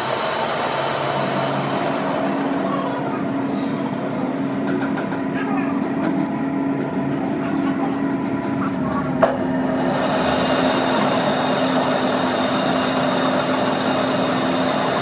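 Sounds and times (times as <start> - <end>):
machine humming: 0.0 - 15.0
noisy wash: 0.0 - 15.0.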